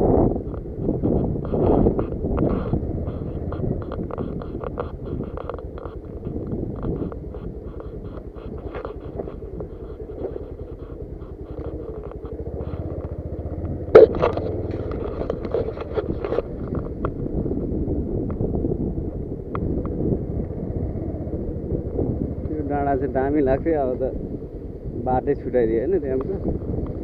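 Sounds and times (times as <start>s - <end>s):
motorcycle engine rumbling: 0.0s - 27.0s
rattles and knocks from bumps: 0.4s - 17.2s.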